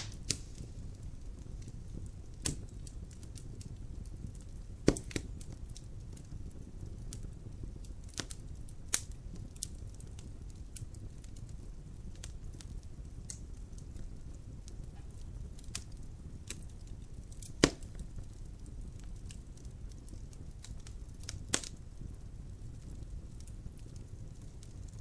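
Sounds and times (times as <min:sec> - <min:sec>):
loud sharp pop: 0:00.0 - 0:00.6, 0:04.9 - 0:05.2, 0:17.6 - 0:17.9
fire crackling: 0:00.0 - 0:25.0.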